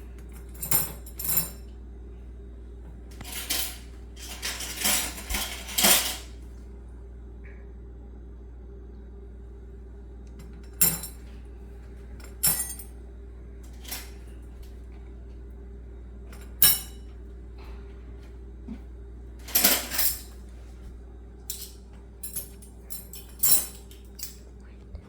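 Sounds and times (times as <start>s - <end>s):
cutlery clinking into a rack: 0.3s - 1.6s, 3.2s - 6.4s, 10.4s - 11.2s, 12.2s - 12.9s, 13.7s - 14.3s, 16.3s - 17.2s, 19.4s - 20.4s, 21.5s - 24.4s.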